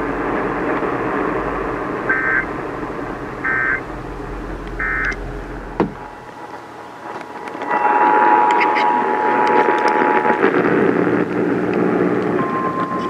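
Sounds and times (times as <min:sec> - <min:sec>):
two-tone digital warbling bursts: 0:00.0 - 0:06.2
radio reception hiss: 0:00.0 - 0:13.0.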